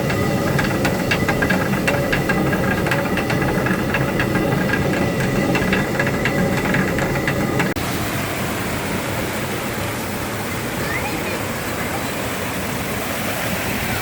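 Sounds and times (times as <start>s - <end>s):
millstone rumbling: 0.0s - 7.8s
wooden knocks and rattles: 0.0s - 7.8s.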